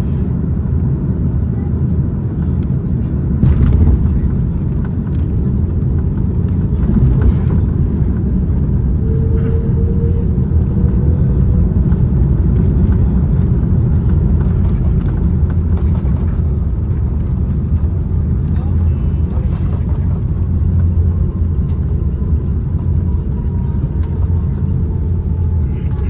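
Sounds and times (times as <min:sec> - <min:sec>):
airliner cabin low rumble: 0:00.0 - 0:26.0.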